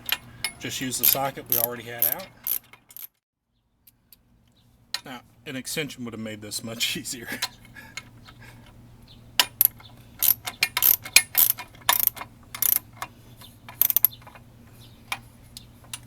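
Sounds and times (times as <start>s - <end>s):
socket ratchet clicking: 0.0s - 3.1s, 9.4s - 13.1s, 13.7s - 14.4s.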